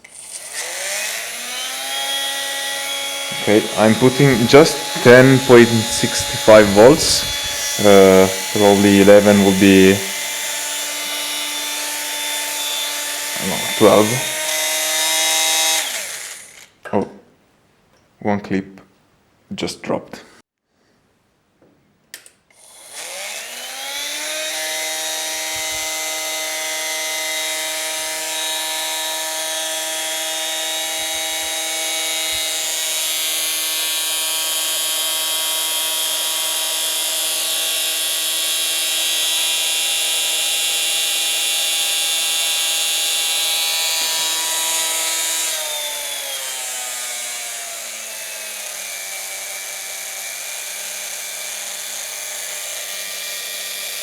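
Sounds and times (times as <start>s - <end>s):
rotary grinder high whine: 0.0s - 16.7s, 22.6s - 54.0s.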